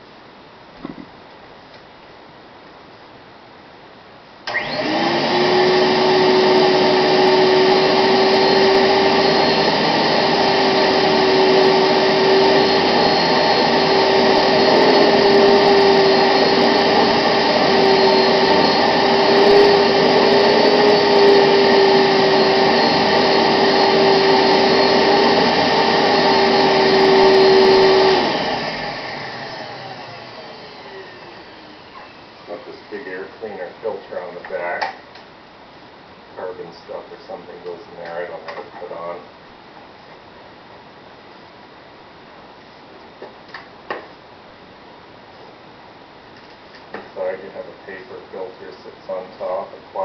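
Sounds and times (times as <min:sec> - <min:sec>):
vacuum cleaner running: 0:04.5 - 0:34.6.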